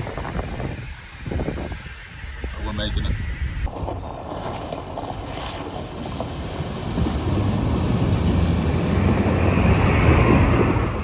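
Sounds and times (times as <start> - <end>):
vehicle rumbling on rough road: 3.4 - 11.0.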